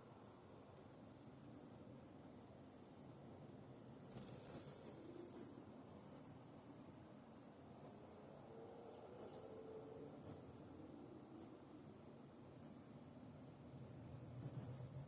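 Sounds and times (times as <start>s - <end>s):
small songbirds chirping: 1.5s - 3.2s, 3.8s - 6.8s, 7.7s - 8.1s, 8.9s - 9.4s, 10.2s - 10.6s, 11.3s - 11.7s, 12.6s - 13.0s, 14.1s - 15.0s.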